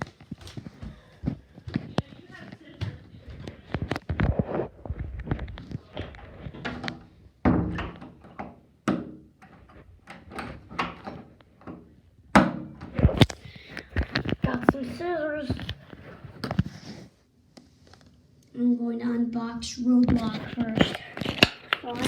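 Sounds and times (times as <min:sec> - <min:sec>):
knocks and thumps of handling: 0:00.0 - 0:16.8.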